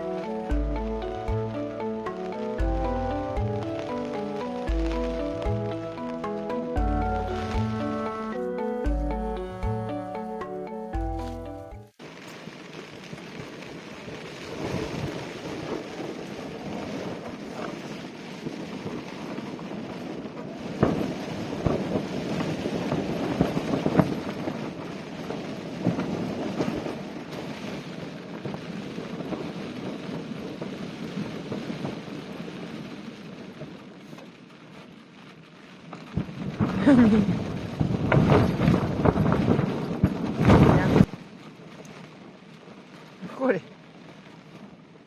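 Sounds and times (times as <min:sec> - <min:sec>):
strong wind gusting against tent: 0:14.4 - 0:34.0, 0:36.0 - 0:41.4.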